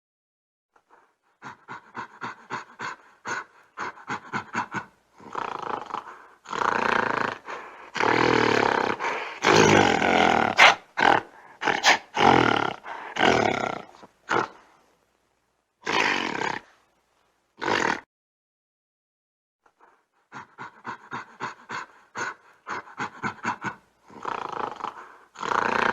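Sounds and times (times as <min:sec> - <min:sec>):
gorilla growling and grunting: 0:01.4 - 0:14.7, 0:15.8 - 0:16.8, 0:17.6 - 0:18.1, 0:20.3 - 0:25.9.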